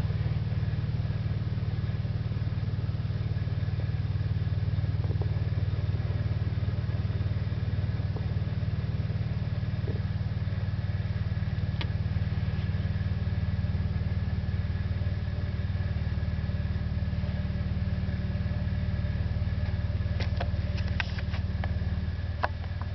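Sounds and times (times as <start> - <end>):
excavator engine idling: 0.0 - 22.9.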